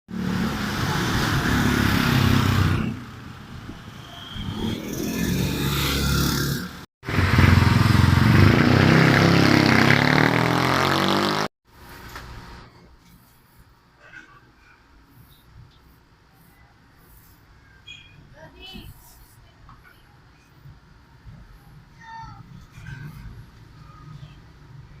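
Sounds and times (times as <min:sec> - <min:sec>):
motor engine running loudly: 0:05.4 - 0:11.5.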